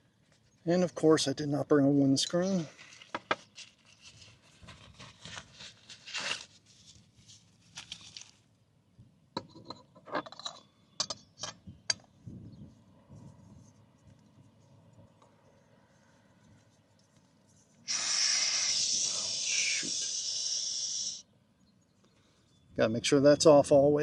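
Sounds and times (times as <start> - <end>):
camping gear rustling and scraping: 2.5 - 8.5.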